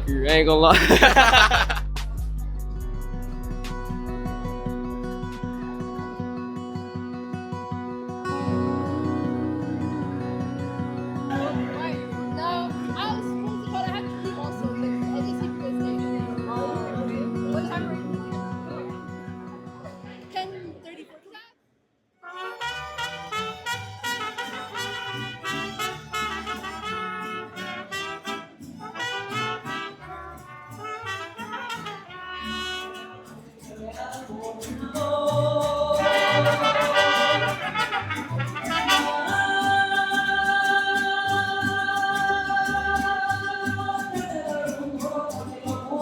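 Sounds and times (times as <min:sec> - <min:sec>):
brass music: 0:00.0 - 0:02.0, 0:22.2 - 0:33.4, 0:36.0 - 0:39.7
person singing: 0:00.6 - 0:01.8, 0:08.3 - 0:12.2, 0:33.8 - 0:46.0.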